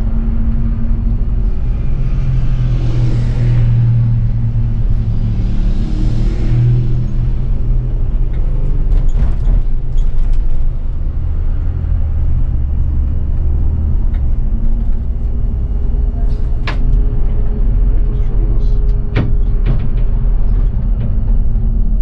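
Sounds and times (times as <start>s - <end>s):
bus engine humming: 0.0s - 22.0s
sharp knocks and rattles: 18.9s - 22.0s.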